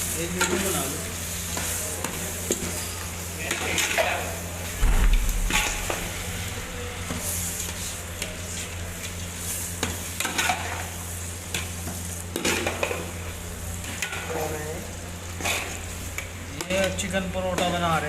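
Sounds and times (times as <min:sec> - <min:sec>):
food sizzling on a griddle: 0:00.0 - 0:18.0
low steady hum: 0:04.8 - 0:08.4.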